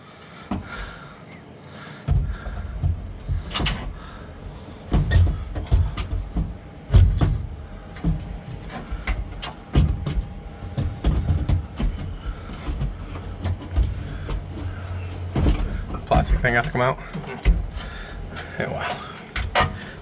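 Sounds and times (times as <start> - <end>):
sharp knocks and thuds: 0.4 - 1.1, 2.0 - 20.0.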